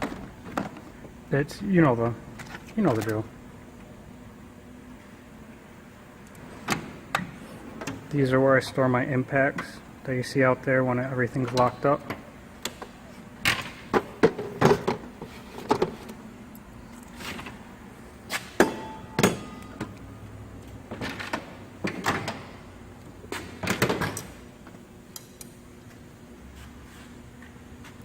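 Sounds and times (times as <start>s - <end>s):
tool cabinet knocks and clicks: 13.4s - 16.0s.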